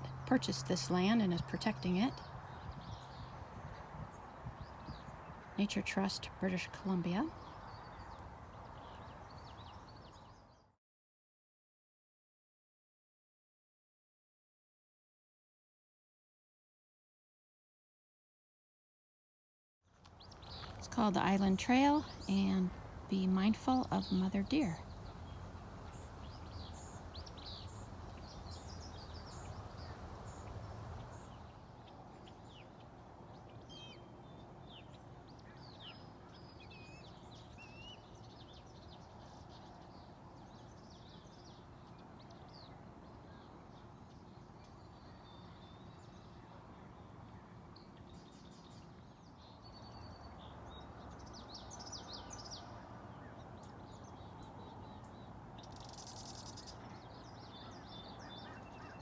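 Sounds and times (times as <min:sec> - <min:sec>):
songbirds chirping and trilling: 0:00.0 - 0:10.7, 0:20.0 - 0:59.0
low background rumble: 0:20.5 - 0:31.3.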